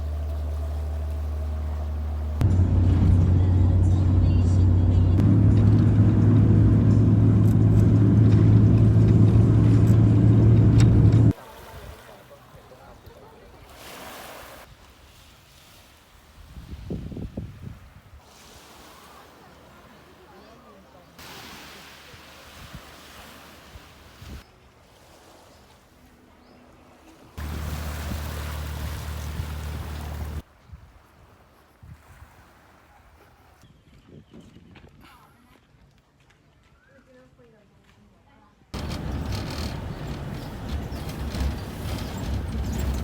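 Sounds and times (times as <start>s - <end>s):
engine humming: 0.0s - 11.4s, 27.4s - 30.4s, 38.8s - 43.0s
sea noise: 0.0s - 16.8s, 17.7s - 33.6s, 38.8s - 43.0s
wind on microphone: 16.4s - 18.2s.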